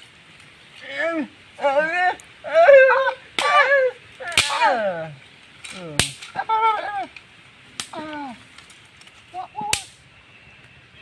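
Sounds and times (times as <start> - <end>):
man's vocal exclamations: 0.8 - 5.2.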